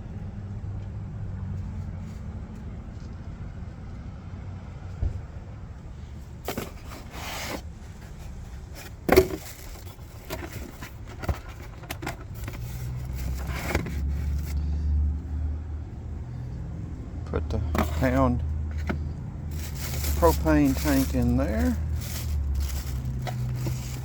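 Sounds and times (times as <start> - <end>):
low steady rumble: 2.5 - 24.0
handling scrapes and rustles: 6.4 - 14.7, 17.6 - 24.0.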